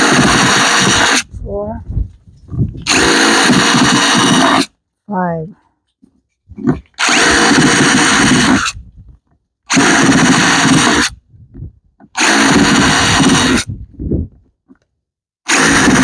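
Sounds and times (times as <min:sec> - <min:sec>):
power drill whirring: 0:02.8 - 0:04.7, 0:07.0 - 0:08.8, 0:12.2 - 0:13.7.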